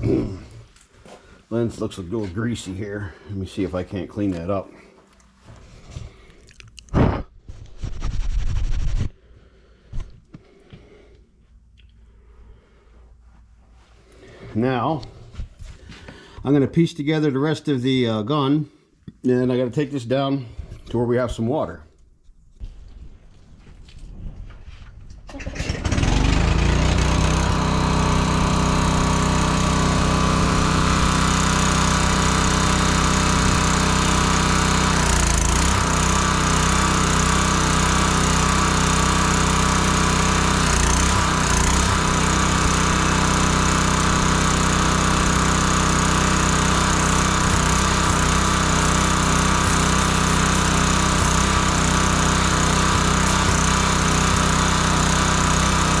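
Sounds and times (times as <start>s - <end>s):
pressure washer engine running: 25.3s - 56.0s
pump and spray hissing: 25.3s - 56.0s.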